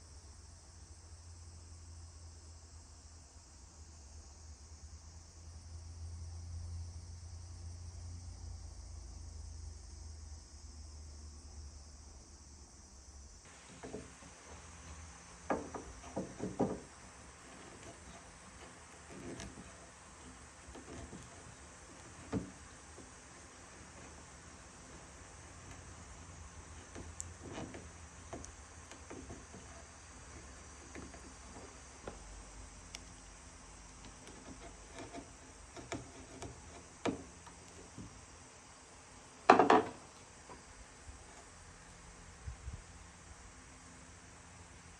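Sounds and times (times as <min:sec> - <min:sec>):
high insect-like hiss: 0:00.0 - 0:44.9
short knocks: 0:13.7 - 0:16.9
hand tools knocking on wood: 0:13.7 - 0:19.8, 0:20.7 - 0:23.1, 0:34.2 - 0:38.1, 0:39.5 - 0:40.0.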